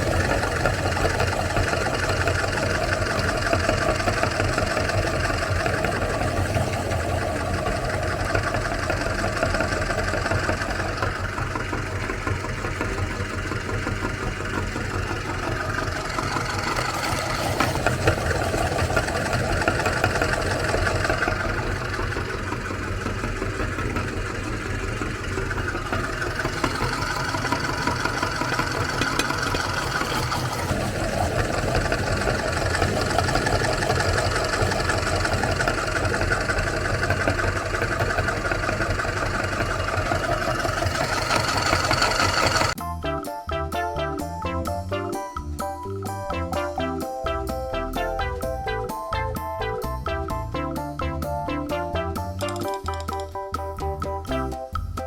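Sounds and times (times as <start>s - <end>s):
meat grinder motor running: 0.0s - 42.8s.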